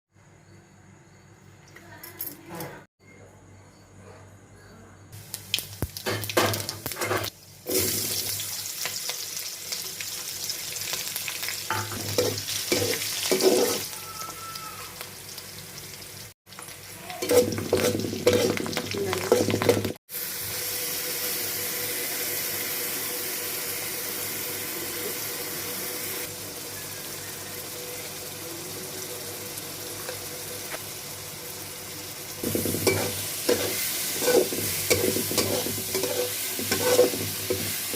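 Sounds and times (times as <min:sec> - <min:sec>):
food sizzling in hot oil: 0:05.2 - 0:37.9
spoon scraping and clattering: 0:11.8 - 0:13.9, 0:17.2 - 0:18.7, 0:32.8 - 0:37.7.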